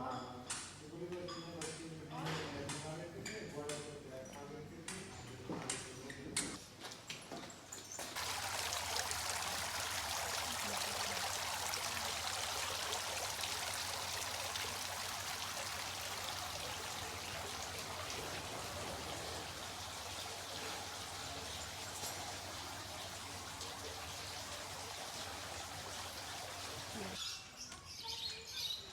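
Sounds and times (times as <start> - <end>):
running water: 8.0 - 27.2.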